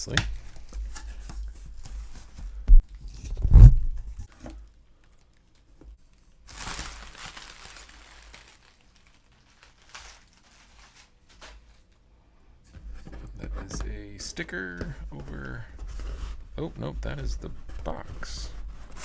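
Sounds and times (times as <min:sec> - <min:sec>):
heavy thumps: 0:00.0 - 0:04.3
packaging crinkling and tearing: 0:03.3 - 0:12.0.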